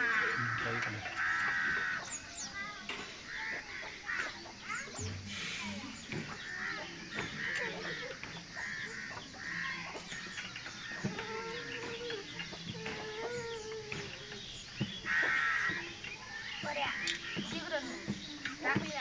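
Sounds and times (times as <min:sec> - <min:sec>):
drawn-out bird calls: 0:00.0 - 0:19.0.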